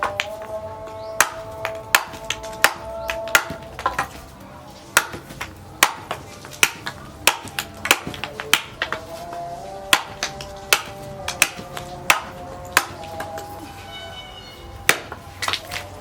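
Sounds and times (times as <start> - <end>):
sharp knocks: 0.0 - 4.2, 5.0 - 9.0, 9.9 - 13.5
background music: 0.0 - 16.0.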